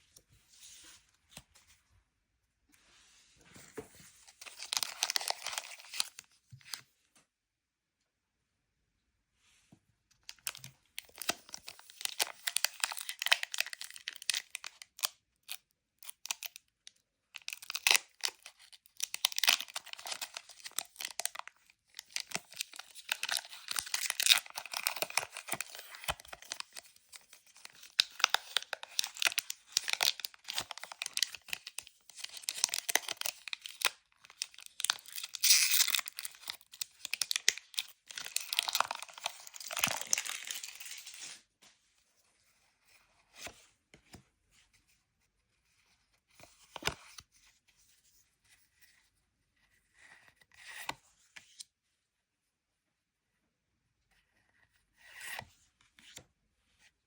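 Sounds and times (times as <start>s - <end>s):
card packaging crackling and tearing: 4.3s - 6.8s, 10.3s - 15.1s, 17.4s - 41.4s.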